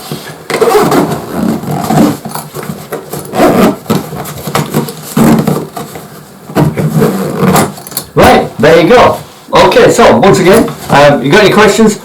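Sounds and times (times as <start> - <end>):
tools rubbing and scraping in bag: 0.0 - 7.9.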